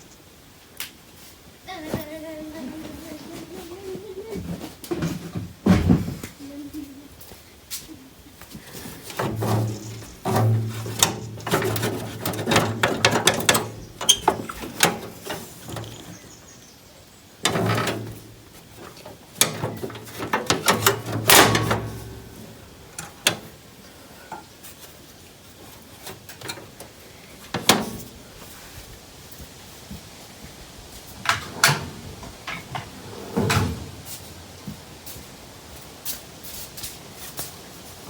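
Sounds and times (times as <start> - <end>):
knocking and clattering: 9.1 - 16.2, 17.4 - 22.5.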